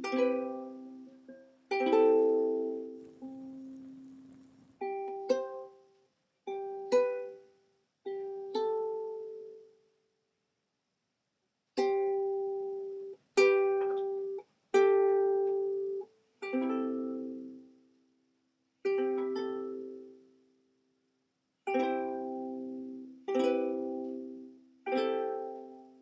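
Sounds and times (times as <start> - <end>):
plucked string instrument chords: 0.0 - 5.6.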